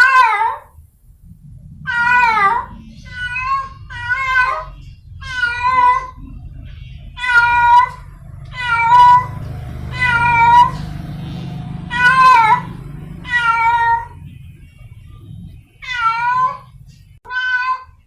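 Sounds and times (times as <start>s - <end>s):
cat meowing: 1.8s - 6.4s, 7.1s - 14.3s, 15.7s - 18.0s.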